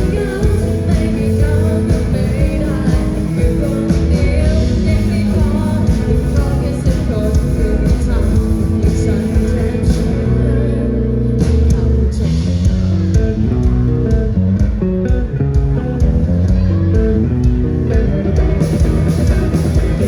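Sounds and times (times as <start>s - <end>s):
live rock band playing: 0.0s - 10.6s, 11.3s - 20.0s
person singing: 0.0s - 12.7s.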